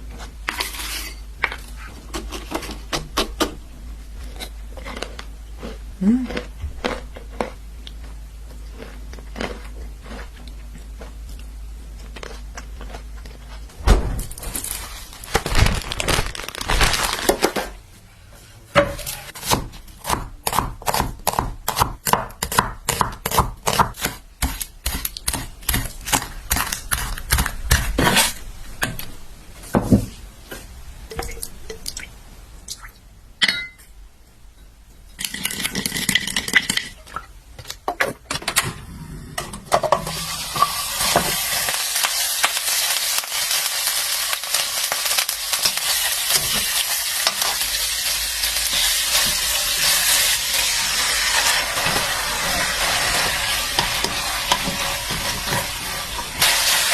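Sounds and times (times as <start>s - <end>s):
low steady hum: 0.0s - 42.8s
dishes and utensils clinking: 33.4s - 34.0s.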